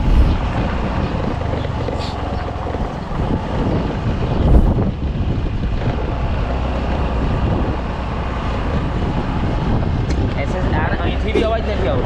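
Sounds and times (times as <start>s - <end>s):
wind on microphone: 0.0s - 6.5s.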